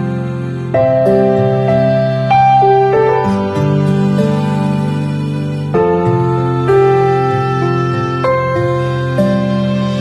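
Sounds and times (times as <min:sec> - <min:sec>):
soft slow instrumental music: 0:00.0 - 0:10.0.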